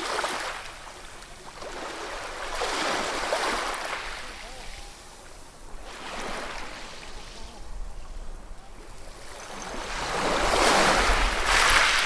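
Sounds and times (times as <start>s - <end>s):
ocean wave breaking: 9.2s - 12.0s.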